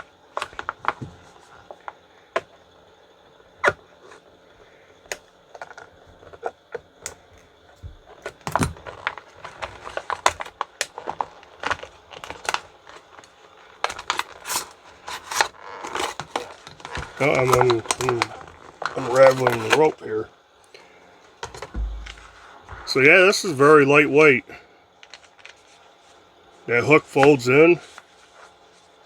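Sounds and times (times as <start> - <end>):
packaging rustling: 8.0 - 19.8, 21.8 - 23.0.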